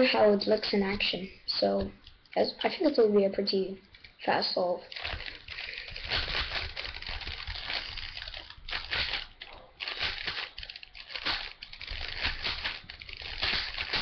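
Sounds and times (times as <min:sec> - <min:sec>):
puzzle cube layers clicking: 0:04.9 - 0:14.0.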